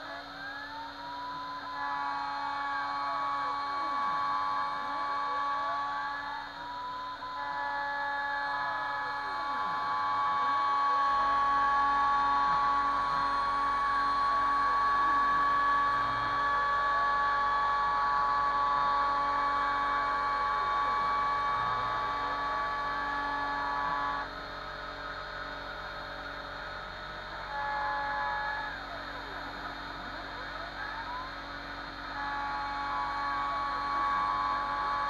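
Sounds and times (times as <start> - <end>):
cutter whining in metal: 0.0 - 35.0.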